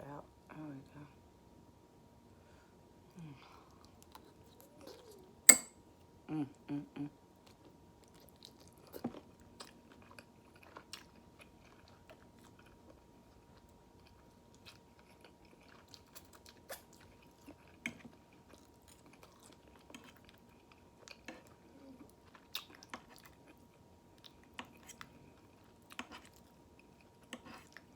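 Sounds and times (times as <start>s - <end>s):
close chewing: 7.4s - 27.9s.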